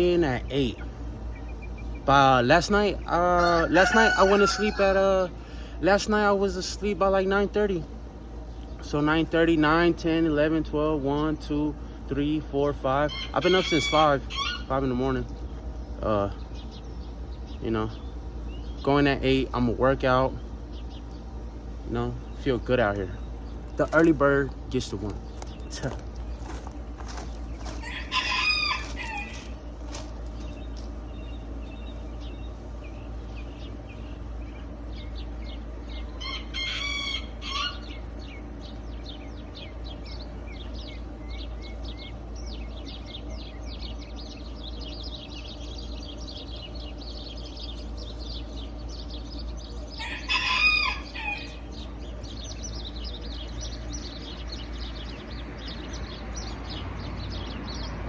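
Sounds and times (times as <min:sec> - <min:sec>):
songbirds chirping: 0:00.0 - 0:58.0
rooster crowing: 0:03.4 - 0:05.0, 0:13.1 - 0:14.7, 0:27.6 - 0:29.6, 0:36.2 - 0:38.0, 0:50.0 - 0:51.8.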